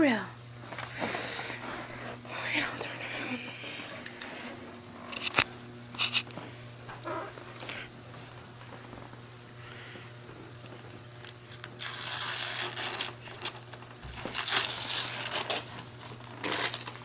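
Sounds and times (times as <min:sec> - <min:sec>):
wrapping paper tearing and crinkling: 0:11.4 - 0:17.0.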